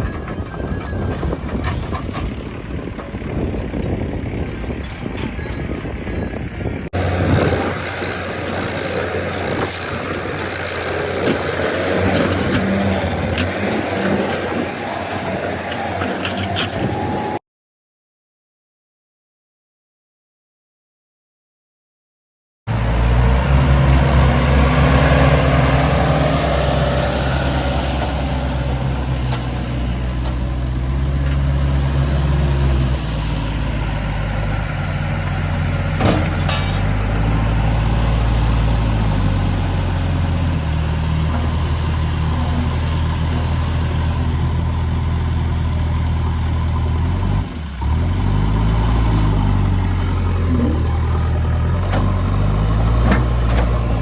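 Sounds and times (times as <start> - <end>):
heavy diesel engine running: 0.0 - 17.4, 22.7 - 54.0.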